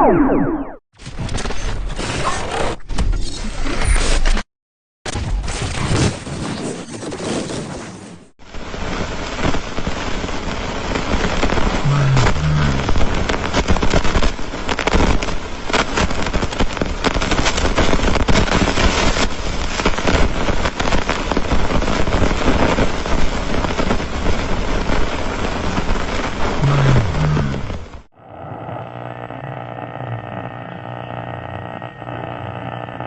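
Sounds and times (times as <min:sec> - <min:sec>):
short low tones: 0:00.0 - 0:00.8, 0:11.8 - 0:13.0, 0:26.6 - 0:33.0
dense crackling hiss: 0:08.5 - 0:28.1
low rumble: 0:11.8 - 0:13.0, 0:26.6 - 0:27.9.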